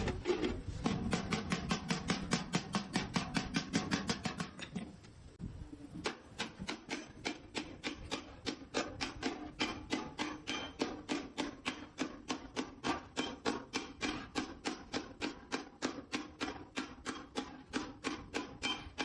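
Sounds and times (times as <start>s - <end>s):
hammer striking sheet metal: 6.0s - 19.0s.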